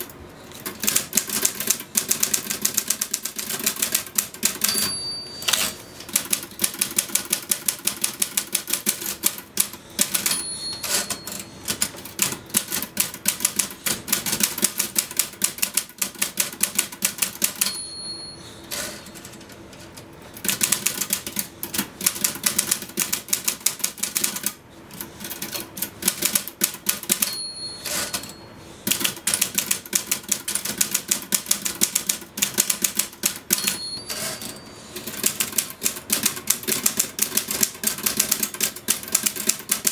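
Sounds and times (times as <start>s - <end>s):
typewriter keys striking: 0.0s - 17.8s, 20.4s - 28.3s, 28.9s - 39.9s
typewriter margin bell ding: 4.4s - 6.4s, 9.9s - 11.9s, 17.4s - 19.4s, 27.0s - 28.5s, 33.2s - 35.0s.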